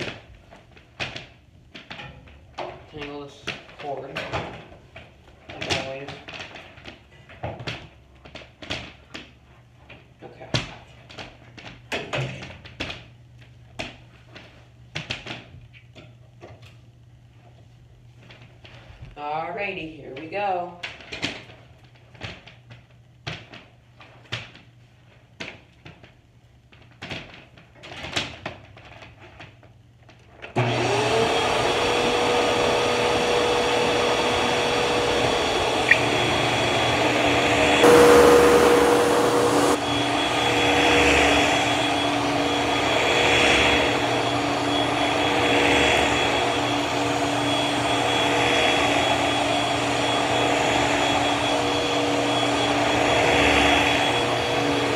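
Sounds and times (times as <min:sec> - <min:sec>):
vacuum cleaner motor whining: 0:30.6 - 0:54.9.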